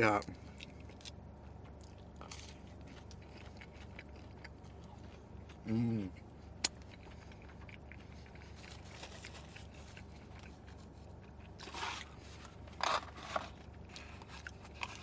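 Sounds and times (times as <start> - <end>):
food packaging rustling and scraping: 7.0 - 15.0.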